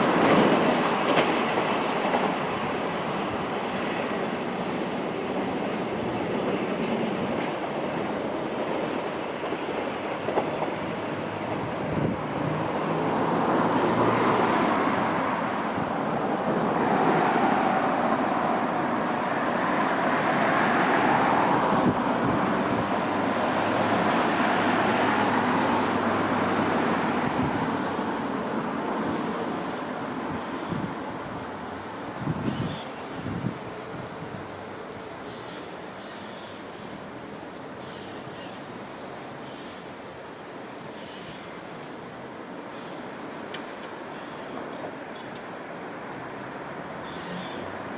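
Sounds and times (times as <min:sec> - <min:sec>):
train rumbling: 0:00.0 - 0:36.0.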